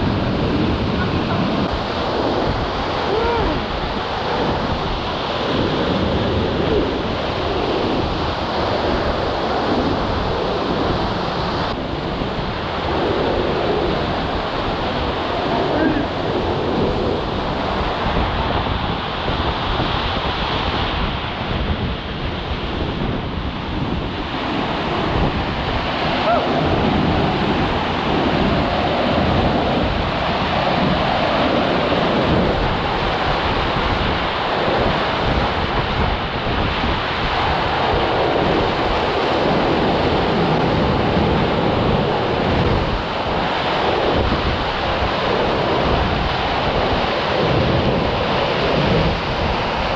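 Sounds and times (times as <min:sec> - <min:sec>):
rushing water: 0:00.0 - 0:49.9
wind buffeting microphone: 0:00.0 - 0:49.9.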